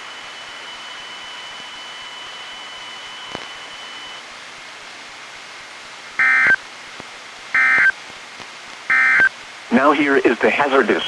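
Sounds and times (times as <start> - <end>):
faint high whine: 0.0 - 4.4, 6.2 - 6.7, 7.5 - 8.0, 8.9 - 11.0
radio static hiss: 0.0 - 11.0
electronic tone beep: 6.2 - 6.6, 7.6 - 7.9, 8.9 - 9.3.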